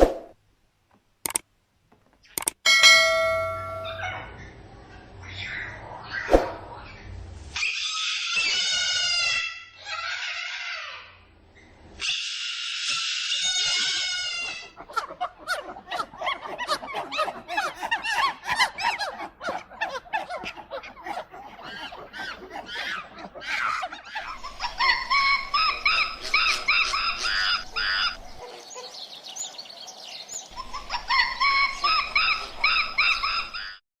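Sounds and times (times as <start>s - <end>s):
drawn-out animal call: 12.0s - 28.4s, 30.6s - 33.8s
overlapping chirps: 14.6s - 29.0s, 30.3s - 33.8s.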